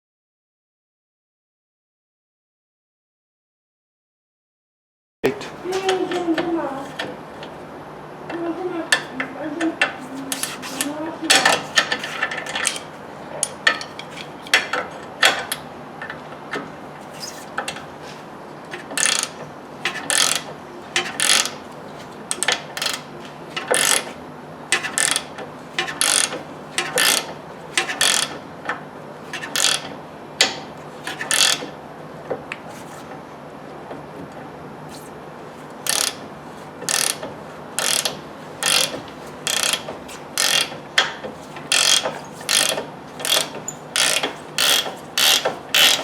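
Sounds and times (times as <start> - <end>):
ratchet wrench clicking: 18.9 - 21.6, 22.3 - 24.1, 24.8 - 28.4, 29.4 - 31.7, 35.8 - 36.2, 36.8 - 46.0.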